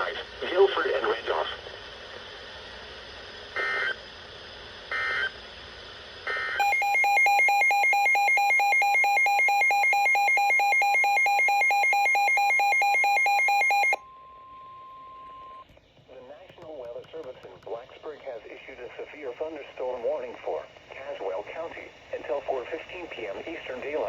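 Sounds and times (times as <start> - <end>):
pulsing electronic alarm: 6.6 - 15.6.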